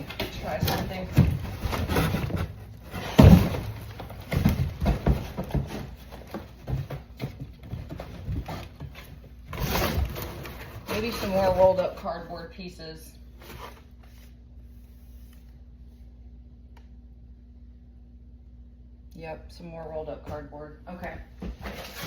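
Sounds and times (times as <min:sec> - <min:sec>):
cardboard box rustling and scraping: 0:00.0 - 0:12.3, 0:21.5 - 0:22.0.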